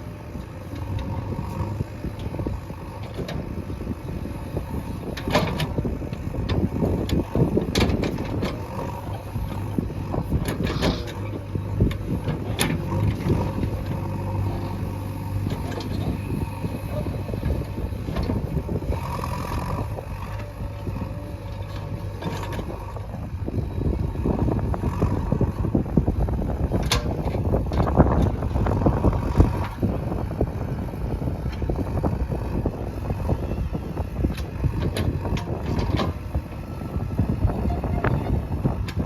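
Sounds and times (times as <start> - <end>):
diesel engine running under load: 0.0 - 39.0.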